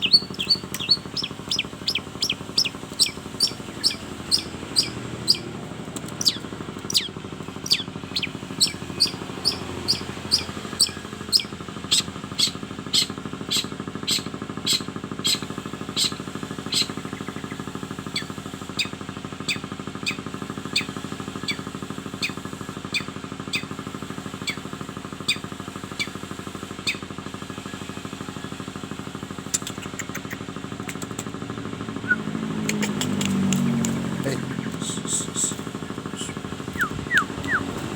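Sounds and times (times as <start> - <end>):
bird chirping: 0.0 - 23.7, 32.0 - 37.8
steady mechanical hum: 0.0 - 37.9.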